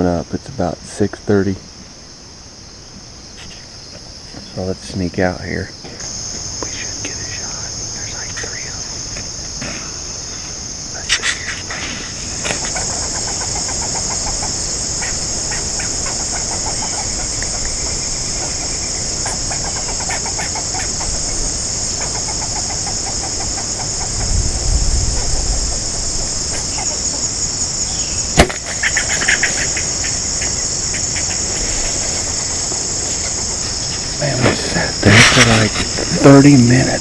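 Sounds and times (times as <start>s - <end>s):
insects droning: 0.0s - 37.0s
squirrels chattering: 5.7s - 37.0s
sharp snap: 28.4s - 28.8s.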